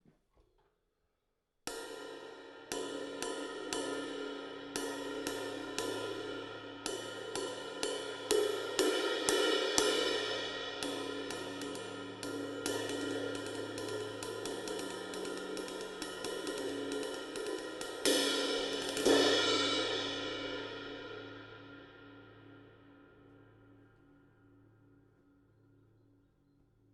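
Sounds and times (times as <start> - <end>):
ride cymbal struck: 2.7 - 23.5.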